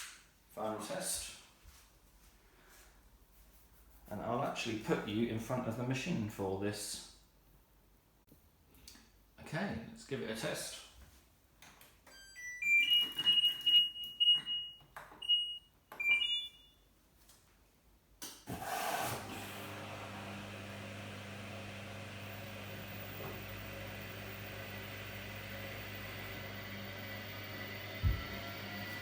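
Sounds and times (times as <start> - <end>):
fan humming: 19.1 - 29.0.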